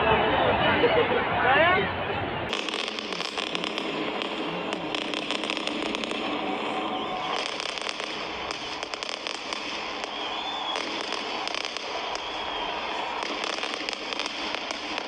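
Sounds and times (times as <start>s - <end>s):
fireworks crackling: 2.5s - 15.0s
faint high whistle: 6.7s - 7.7s, 9.9s - 13.4s.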